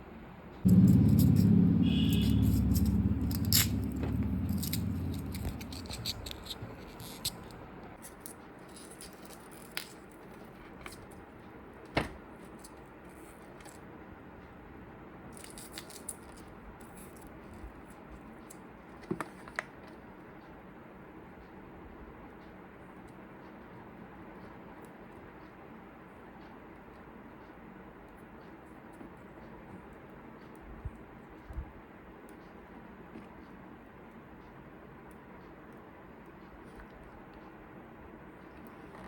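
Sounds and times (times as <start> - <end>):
loud low rumble: 0.6 - 7.4.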